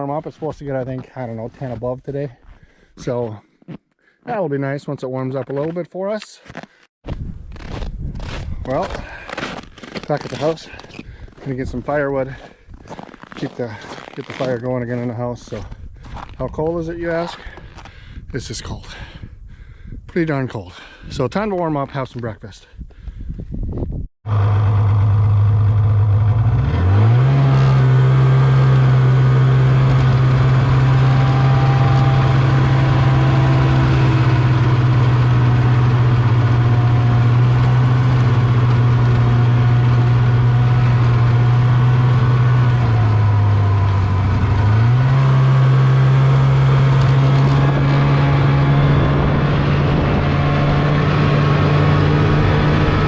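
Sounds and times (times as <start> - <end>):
snowmobile engine running: 7.7 - 15.6, 24.3 - 53.0.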